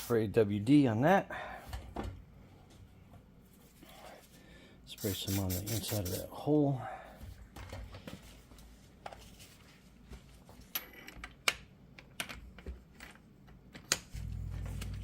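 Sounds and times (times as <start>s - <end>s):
steady low hum: 14.2s - 15.0s.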